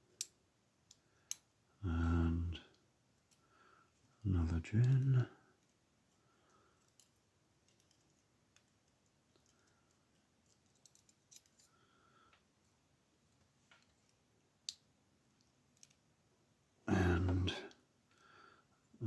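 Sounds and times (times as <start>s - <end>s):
small metallic clicks: 0.1s - 1.5s, 4.7s - 5.8s, 6.5s - 12.4s, 13.6s - 16.0s.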